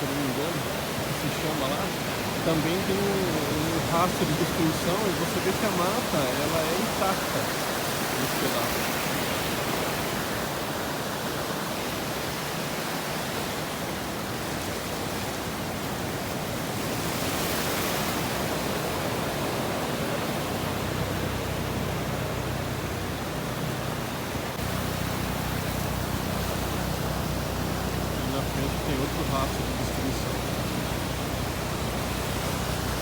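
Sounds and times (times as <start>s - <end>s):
steady rushing noise: 0.0s - 11.4s, 17.0s - 33.0s
low engine hum: 18.8s - 33.0s.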